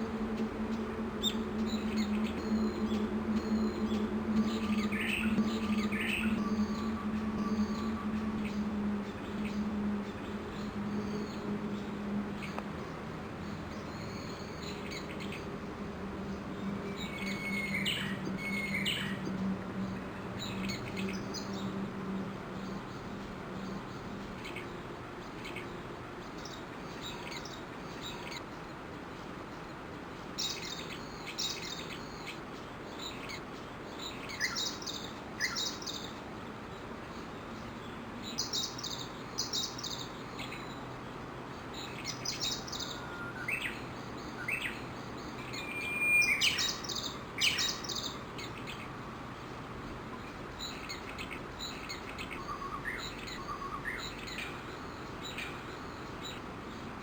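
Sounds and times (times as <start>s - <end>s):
birds chirping and whistling: 0.0s - 12.6s, 13.6s - 24.2s, 45.4s - 48.8s
steady background hiss: 0.0s - 57.0s.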